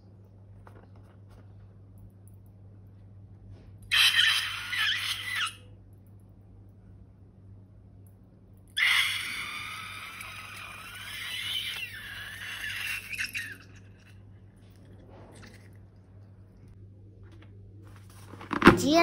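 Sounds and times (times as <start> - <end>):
balloon squeaking and hissing: 3.9 - 5.6, 8.8 - 13.7.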